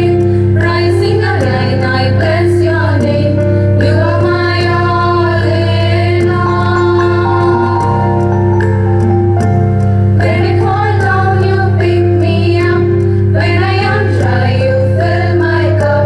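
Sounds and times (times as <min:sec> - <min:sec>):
women singing prayer song: 0:00.0 - 0:08.2, 0:10.2 - 0:16.0
sustained instrumental chords: 0:00.0 - 0:16.0
low drone: 0:03.0 - 0:12.1.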